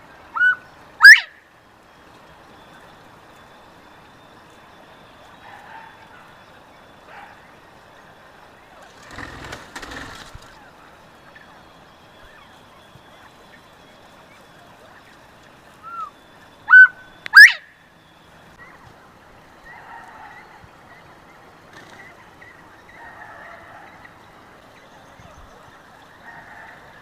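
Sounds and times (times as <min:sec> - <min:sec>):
quail whistling: 0:00.3 - 0:01.4, 0:02.5 - 0:18.9.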